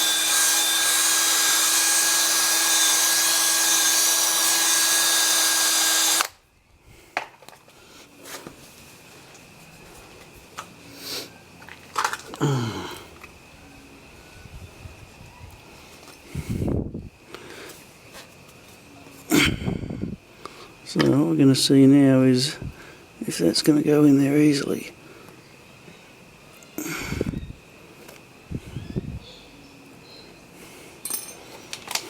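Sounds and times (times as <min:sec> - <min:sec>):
power drill boring into rubber: 0:00.0 - 0:06.3.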